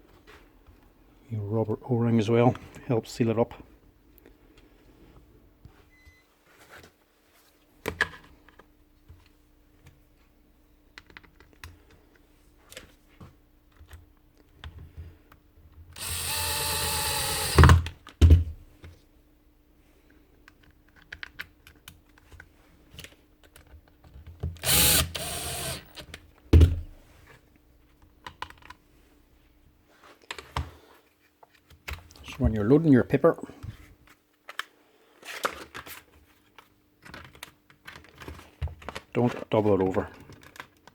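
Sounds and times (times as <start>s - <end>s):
power tool motor running: 16.0s - 17.8s, 24.6s - 26.0s
clicks and knocks of handled parts: 20.4s - 24.7s, 28.0s - 28.8s, 34.1s - 40.9s.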